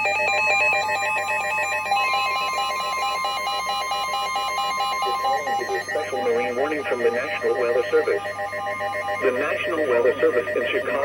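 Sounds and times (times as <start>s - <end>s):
electronic beeping warble: 0.0s - 11.0s
steady high tone: 0.0s - 11.0s.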